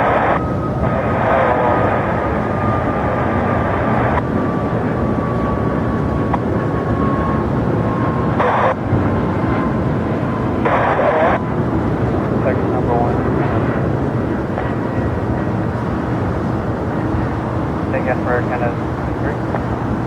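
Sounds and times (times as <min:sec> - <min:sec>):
radio hiss: 0:00.0 - 0:02.1, 0:08.4 - 0:08.8, 0:10.6 - 0:11.4, 0:12.4 - 0:13.2, 0:17.9 - 0:19.7
jet airliner engines running: 0:00.0 - 0:20.0.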